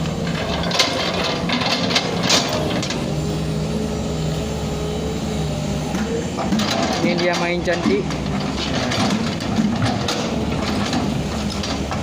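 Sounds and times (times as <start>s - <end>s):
excavator diesel engine running: 0.0s - 12.0s
metal clanks and scrapes: 0.3s - 3.0s, 6.0s - 12.0s.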